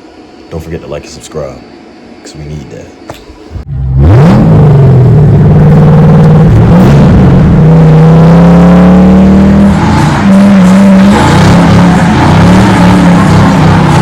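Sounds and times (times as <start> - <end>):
car engine revving: 3.3 - 14.0.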